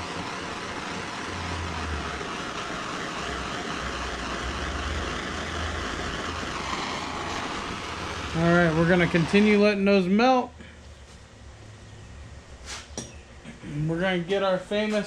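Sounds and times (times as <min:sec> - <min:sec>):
torch flame hissing: 0:00.0 - 0:11.3, 0:12.5 - 0:13.1.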